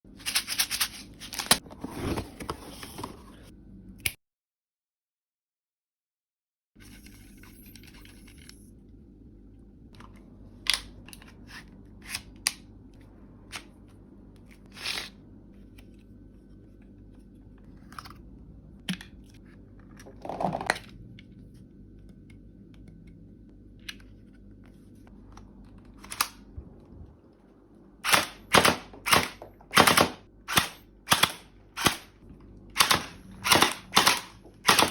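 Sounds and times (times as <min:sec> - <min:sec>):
faint steady hum: 0:06.8 - 0:34.7.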